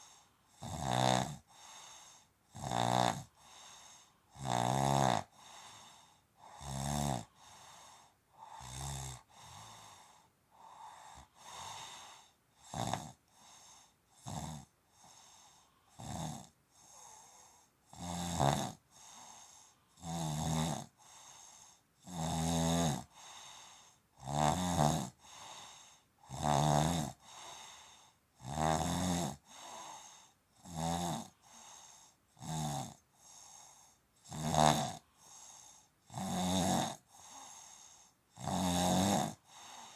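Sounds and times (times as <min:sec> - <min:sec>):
soft breaths: 0:00.0 - 0:00.6, 0:01.4 - 0:02.4, 0:03.3 - 0:04.4, 0:05.3 - 0:06.6, 0:07.2 - 0:12.6, 0:13.2 - 0:14.2, 0:14.8 - 0:16.0, 0:16.7 - 0:17.8, 0:18.8 - 0:20.0, 0:20.9 - 0:21.9, 0:23.1 - 0:24.1, 0:25.2 - 0:26.3, 0:27.2 - 0:28.3, 0:29.4 - 0:30.4, 0:31.3 - 0:32.4, 0:33.0 - 0:34.2, 0:35.0 - 0:36.1, 0:37.0 - 0:38.3, 0:39.4 - 0:39.9
loud rattling snore: 0:00.6 - 0:01.4, 0:02.6 - 0:03.3, 0:04.4 - 0:05.3, 0:06.6 - 0:07.3, 0:12.7 - 0:13.2, 0:16.0 - 0:16.5, 0:18.0 - 0:18.8, 0:20.0 - 0:20.9, 0:22.1 - 0:23.1, 0:24.2 - 0:25.2, 0:26.3 - 0:27.2, 0:28.4 - 0:29.4, 0:30.6 - 0:31.4, 0:32.4 - 0:33.4, 0:34.3 - 0:35.5, 0:36.1 - 0:37.0, 0:38.4 - 0:39.5.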